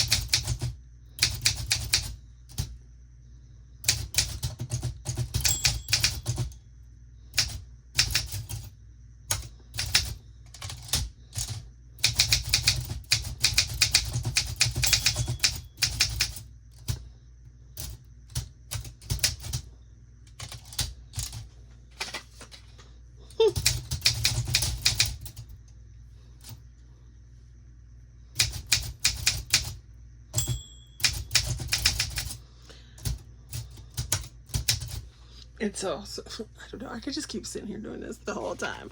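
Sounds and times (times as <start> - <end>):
manual typewriter key strikes: 3.8 - 6.6, 9.3 - 16.4, 28.4 - 32.4.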